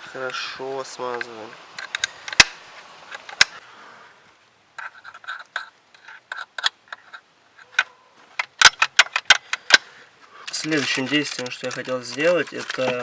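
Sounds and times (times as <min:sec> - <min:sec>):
clicks and scrapes of hand work: 0:04.8 - 0:13.0.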